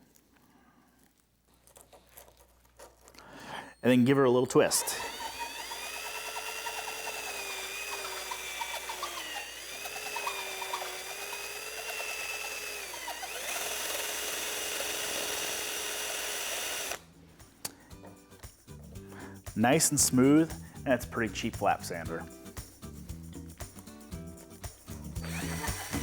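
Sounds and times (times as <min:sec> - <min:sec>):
hand drill motor whine: 0:04.5 - 0:17.0, 0:25.2 - 0:26.0.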